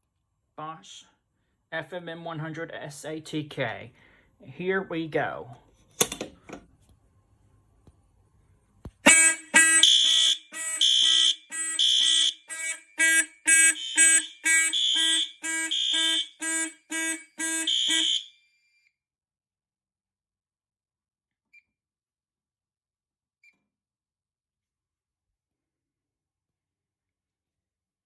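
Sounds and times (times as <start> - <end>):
pulsing fire alarm horns: 9.0 - 18.5.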